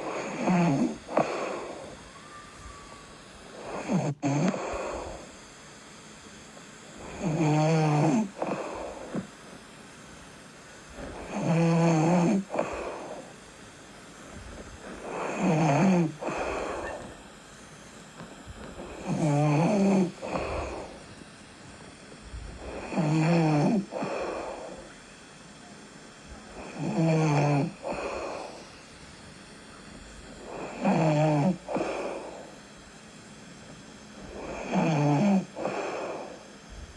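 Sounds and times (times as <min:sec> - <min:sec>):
person snoring: 0:00.0 - 0:05.5, 0:06.8 - 0:09.3, 0:10.9 - 0:13.5, 0:14.2 - 0:17.2, 0:18.6 - 0:21.1, 0:22.5 - 0:25.0, 0:26.5 - 0:28.9, 0:30.3 - 0:32.7, 0:34.2 - 0:36.9
soft breathing: 0:00.0 - 0:36.9.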